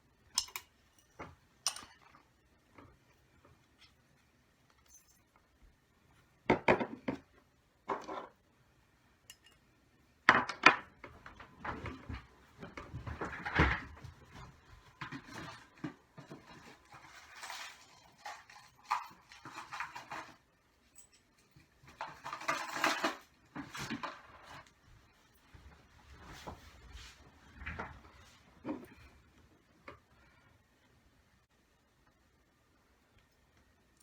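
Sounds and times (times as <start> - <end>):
metal parts and tools clinking: 0.3 - 2.1, 17.1 - 24.0.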